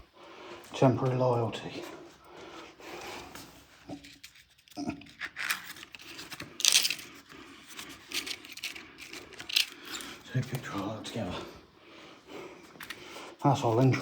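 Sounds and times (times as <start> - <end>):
small objects scraping and clattering: 3.8 - 10.7.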